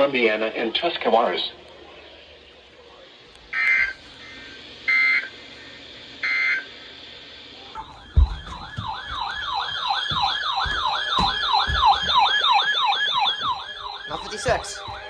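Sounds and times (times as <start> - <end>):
fast yelp siren: 7.8 - 15.0
low thumps: 7.8 - 15.0.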